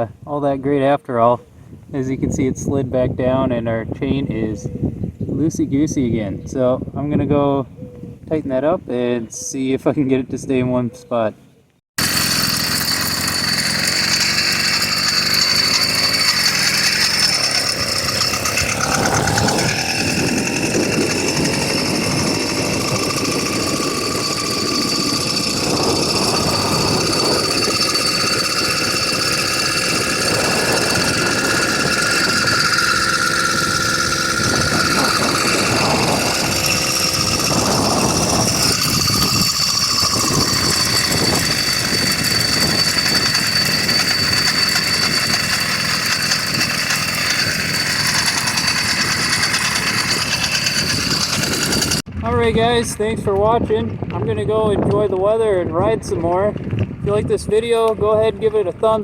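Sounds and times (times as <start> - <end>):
two-stroke engine running: 12.0 - 52.1.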